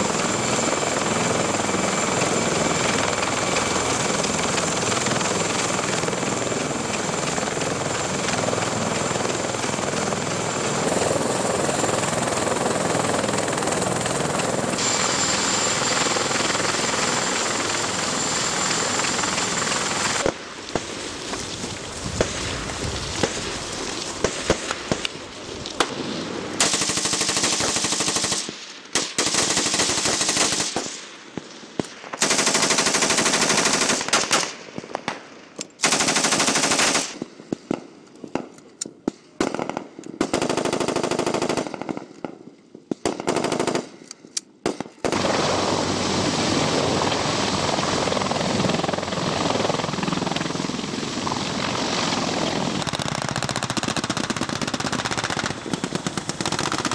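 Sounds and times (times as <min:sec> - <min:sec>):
automatic gunfire bursts: 0:26.6 - 0:31.0, 0:32.2 - 0:34.6, 0:35.8 - 0:37.2, 0:39.4 - 0:42.0, 0:43.0 - 0:44.0.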